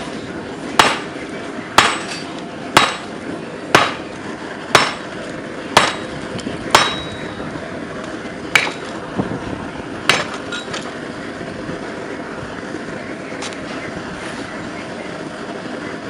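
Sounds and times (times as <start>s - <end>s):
steady background hiss: 0.0s - 16.0s
hammer striking steel on anvil: 0.8s - 1.2s, 1.8s - 4.1s, 4.7s - 7.4s, 8.5s - 8.9s, 10.1s - 10.7s.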